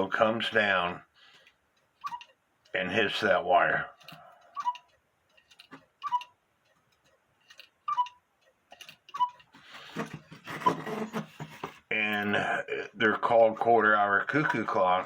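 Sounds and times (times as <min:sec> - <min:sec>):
clock ticking: 0:00.0 - 0:09.6
cuckoo clock call: 0:02.0 - 0:02.3, 0:04.6 - 0:04.9, 0:06.0 - 0:06.4, 0:07.9 - 0:08.2.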